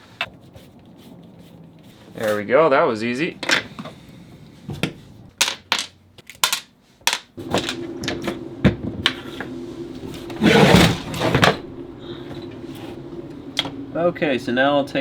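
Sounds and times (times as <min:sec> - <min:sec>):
steady low hum: 0:07.4 - 0:15.0.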